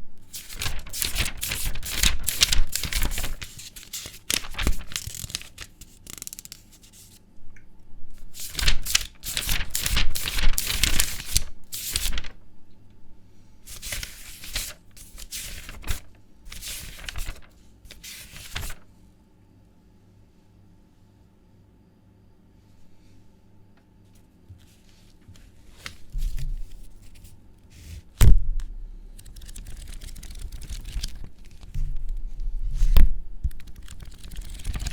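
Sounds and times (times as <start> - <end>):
paper pages turning: 0.3 - 7.2, 8.3 - 12.4, 13.7 - 18.8, 24.6 - 28.2, 29.1 - 34.9.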